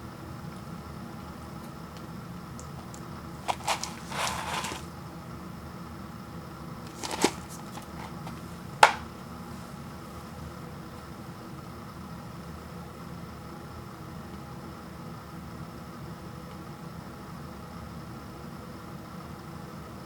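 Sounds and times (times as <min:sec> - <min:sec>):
food packaging rustling: 0:02.6 - 0:05.0, 0:06.9 - 0:09.1.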